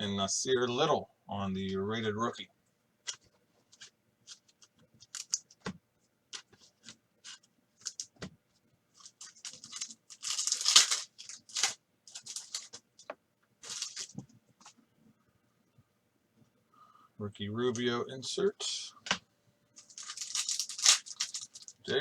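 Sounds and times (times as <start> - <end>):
wrapper tearing and crinkling: 5.0 - 5.4, 9.0 - 12.8, 13.6 - 14.2, 19.8 - 21.8.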